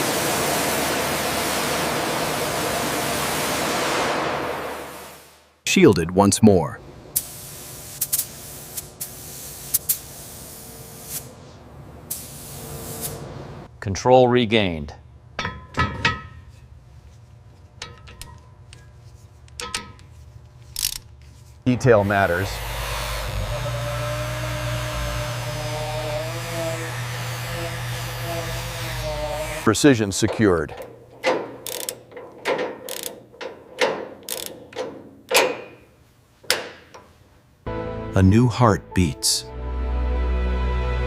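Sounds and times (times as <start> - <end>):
ringing metal taps: 15.4 - 16.4
metallic clicks of tools: 30.7 - 35.6.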